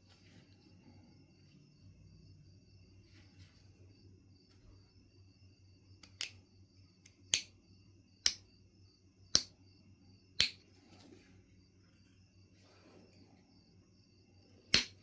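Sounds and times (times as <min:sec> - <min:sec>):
flint knapping clicks: 0:09.3 - 0:09.5, 0:10.4 - 0:10.6, 0:14.7 - 0:15.0.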